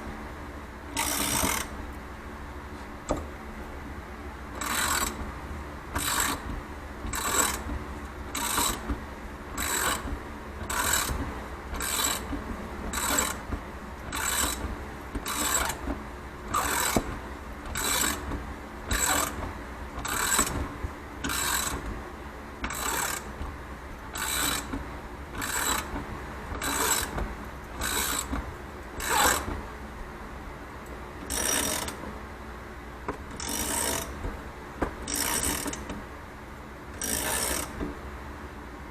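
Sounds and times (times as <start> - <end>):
ratchet wrench cranking: 1.0 - 1.7, 4.6 - 5.2, 6.0 - 6.5, 7.1 - 7.7, 8.3 - 8.8, 9.6 - 11.2, 11.8 - 13.5, 14.1 - 15.8, 16.5 - 17.1, 17.7 - 18.3, 18.9 - 19.4, 20.0 - 20.6, 21.2 - 21.8, 22.7 - 23.3, 24.2 - 24.7, 25.4 - 25.9, 26.6 - 27.2, 27.8 - 28.3, 29.0 - 29.5, 31.2 - 32.0, 33.3 - 34.2, 35.0 - 35.8, 37.0 - 37.8.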